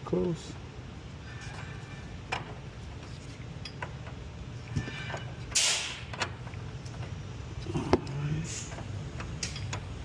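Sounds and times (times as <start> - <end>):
short loud hiss: 5.6 - 6.0.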